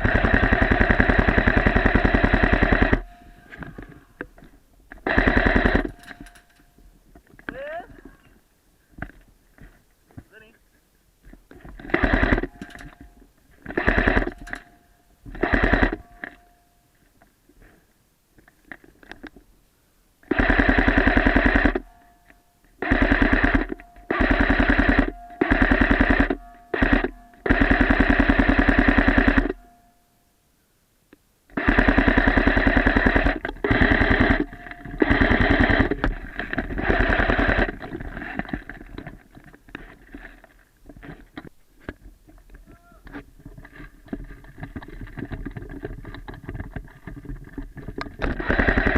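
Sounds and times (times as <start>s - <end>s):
airsoft guns firing bursts: 0.0s - 3.7s, 5.0s - 6.5s, 11.8s - 16.4s, 20.2s - 22.0s, 22.8s - 29.7s, 31.5s - 38.9s, 48.3s - 48.9s.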